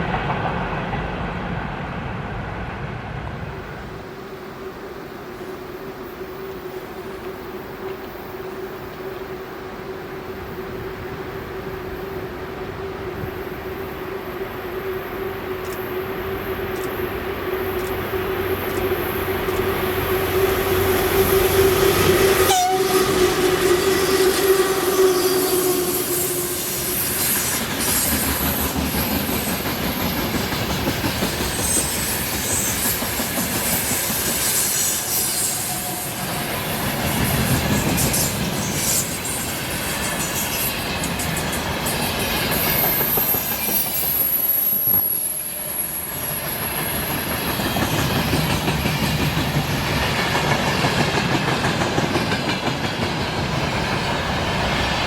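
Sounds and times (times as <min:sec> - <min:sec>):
high wheel squeal: 0:19.5 - 0:30.2, 0:31.4 - 0:47.8
train horn: 0:19.9 - 0:28.1, 0:34.6 - 0:39.1.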